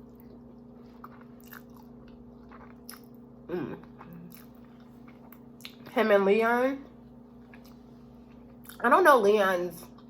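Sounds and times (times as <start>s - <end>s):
person chewing pasta: 0.0s - 5.9s, 7.4s - 8.8s
faint steady hum: 0.0s - 10.0s.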